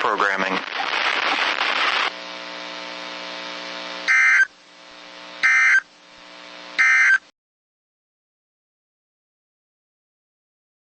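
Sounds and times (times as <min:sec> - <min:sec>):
steady electrical hum: 0:00.0 - 0:07.3
screeching digital data bursts: 0:04.1 - 0:04.5, 0:05.4 - 0:05.9, 0:06.8 - 0:07.2.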